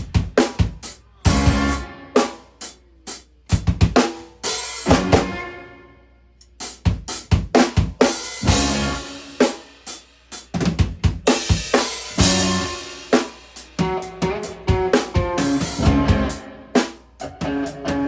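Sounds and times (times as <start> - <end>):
rock band playing: 0.0 - 2.8, 3.5 - 5.6, 6.6 - 18.0
drum fill with cymbals: 0.0 - 5.4, 6.6 - 18.0.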